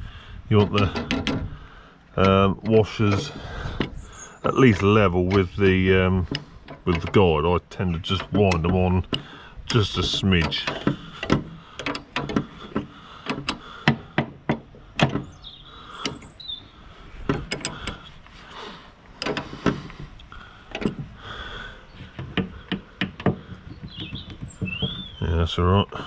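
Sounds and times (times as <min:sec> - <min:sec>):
spanner clicking on metal nut: 0:00.6 - 0:01.6, 0:02.2 - 0:07.2, 0:08.0 - 0:15.2, 0:17.3 - 0:18.1, 0:19.2 - 0:21.0.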